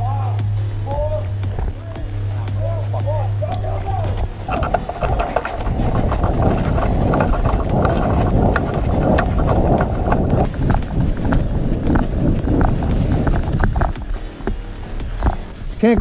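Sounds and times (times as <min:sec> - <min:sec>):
hurried footsteps: 0:00.0 - 0:16.0
low rumble on microphone: 0:00.0 - 0:16.0
gear and rifle rattling: 0:04.0 - 0:15.9.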